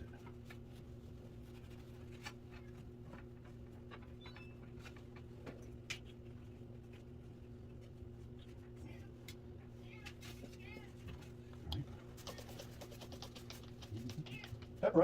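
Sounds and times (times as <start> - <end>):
steady low hum: 0.0 - 15.0
brush scratching: 12.1 - 14.8.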